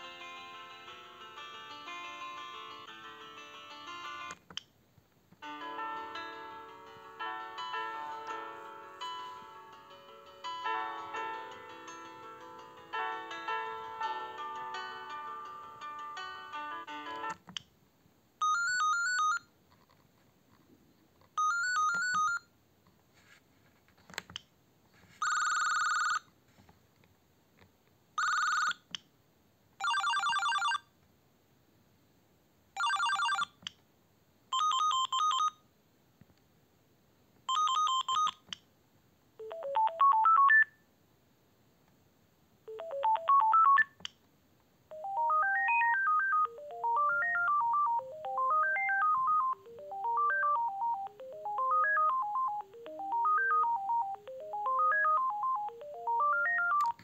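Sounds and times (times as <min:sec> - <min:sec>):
phone ringtones: 0:18.4 - 0:19.5, 0:21.4 - 0:22.5, 0:25.2 - 0:26.2, 0:28.2 - 0:28.8, 0:29.8 - 0:30.8, 0:32.8 - 0:33.5, 0:34.5 - 0:35.6, 0:37.5 - 0:38.4, 0:39.4 - 0:40.8, 0:42.7 - 0:44.1, 0:44.9 - 0:57.0.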